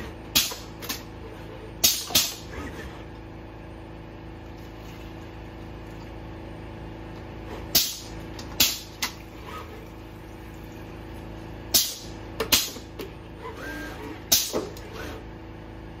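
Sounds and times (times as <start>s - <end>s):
robot arm humming: 13.4s - 15.2s.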